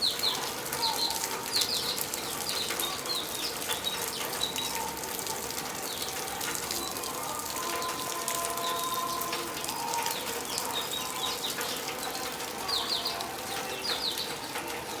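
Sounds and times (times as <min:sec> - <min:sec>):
small birds chirping: 0:00.0 - 0:05.0, 0:09.7 - 0:14.6
steady rain: 0:00.0 - 0:15.0.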